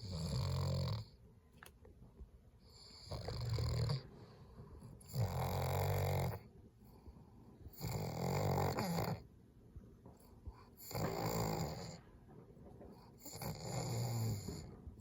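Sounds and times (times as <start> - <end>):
dog growling low: 2.9 - 4.1, 5.0 - 6.5, 7.7 - 9.3, 10.8 - 12.1, 13.2 - 15.0.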